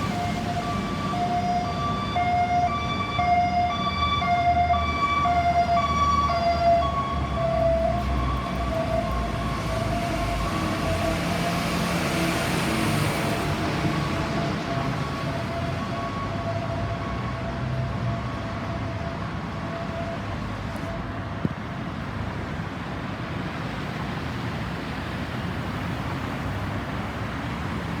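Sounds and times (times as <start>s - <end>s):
road traffic noise: 0.0s - 28.0s.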